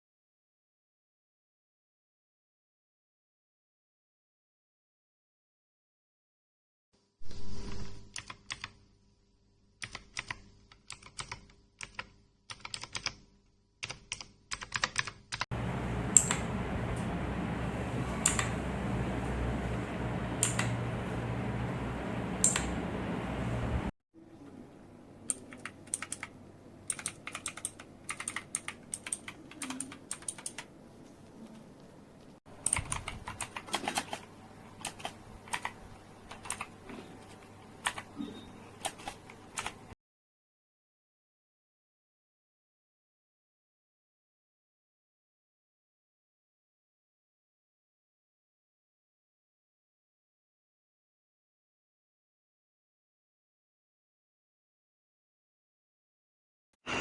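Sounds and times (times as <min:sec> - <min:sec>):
mechanical keyboard key clicks: 0:09.8 - 0:13.2, 0:25.3 - 0:26.3, 0:26.9 - 0:30.7
loud steady noise: 0:15.5 - 0:23.9.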